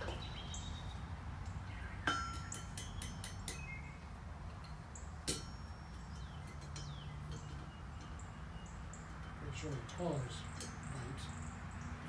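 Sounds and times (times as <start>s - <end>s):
hammer striking iron on anvil: 2.1s - 3.7s, 5.3s - 5.6s
light metal clinks: 2.1s - 3.8s, 4.5s - 11.5s.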